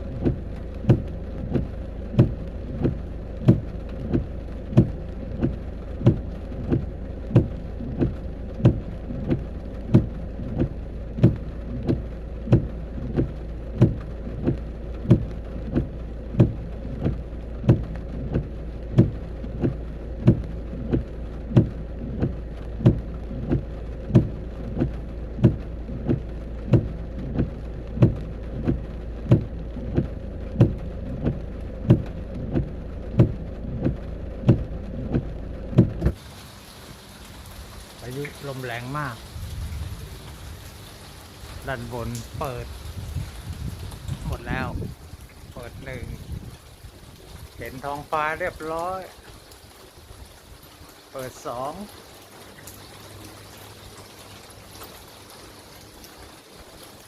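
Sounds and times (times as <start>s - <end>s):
low rumble: 0.0s - 49.5s
regular knocking: 0.2s - 36.2s.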